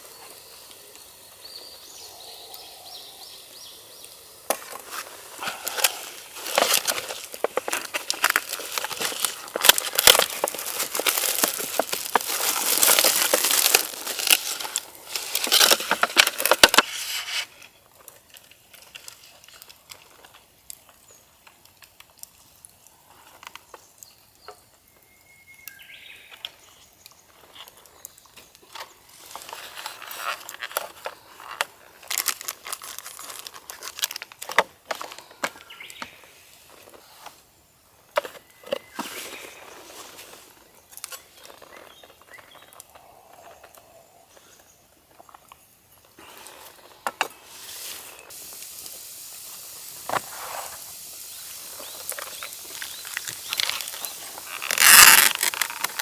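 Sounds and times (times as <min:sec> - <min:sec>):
crinkling and rustling: 0:04.5 - 0:23.7, 0:27.2 - 0:37.4, 0:51.6 - 0:56.0.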